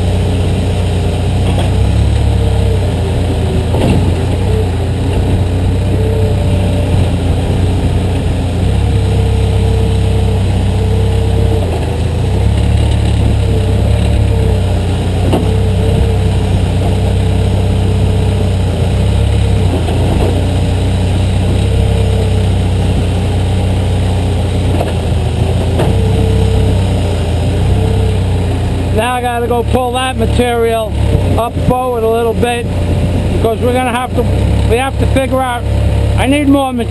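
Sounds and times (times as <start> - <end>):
diesel engine running: 0.0 - 36.9
engine whine: 0.0 - 36.9
sharp knocks: 15.2 - 16.1.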